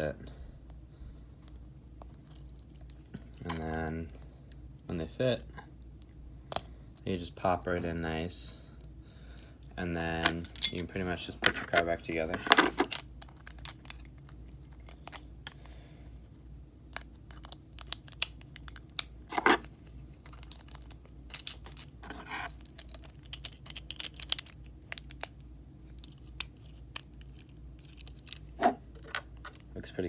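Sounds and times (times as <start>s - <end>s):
short scrapes: 28.6s - 28.8s.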